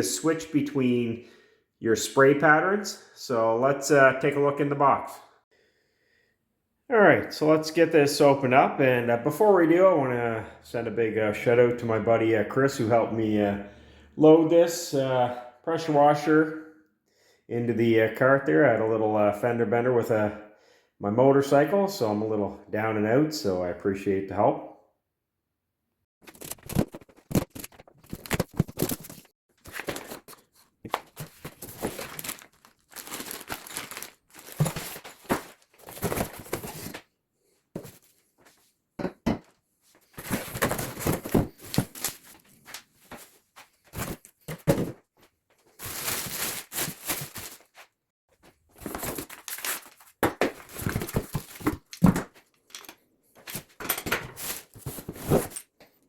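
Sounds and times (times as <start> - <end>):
cardboard box rustling and tearing: 26.3 - 37.0, 40.2 - 42.4, 45.8 - 47.8, 48.8 - 51.8.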